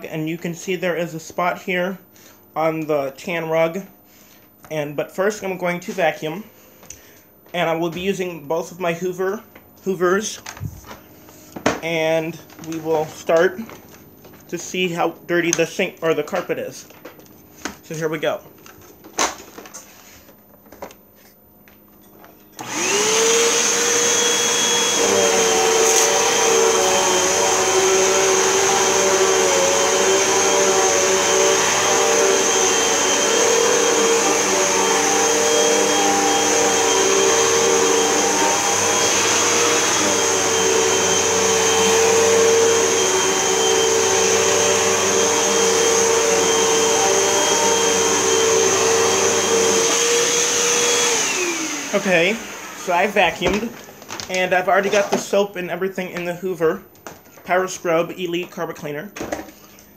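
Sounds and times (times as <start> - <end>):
vacuum cleaner motor whine: 22.6 - 55.3.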